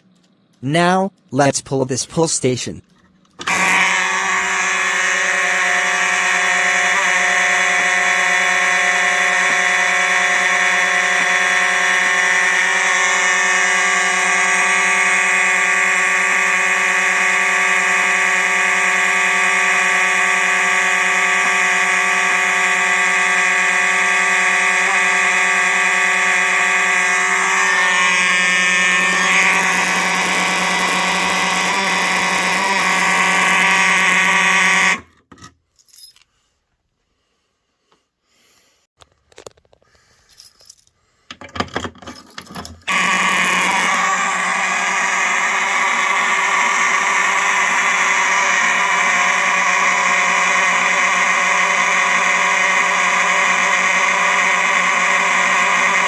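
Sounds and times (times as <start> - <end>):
fire alarm horns buzzing: 3.5 - 34.9.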